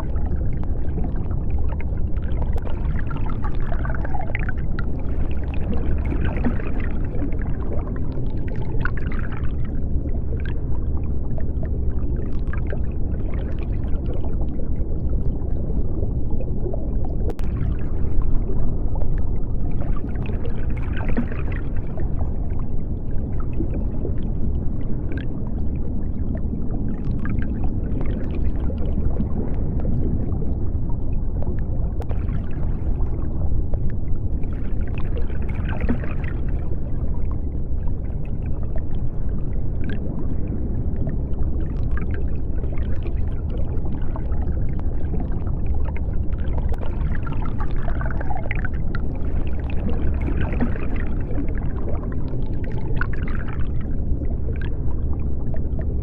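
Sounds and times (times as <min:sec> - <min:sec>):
deep underwater rumbling wash: 0:00.0 - 0:56.0
water bubbling and gurgling: 0:00.0 - 0:56.0.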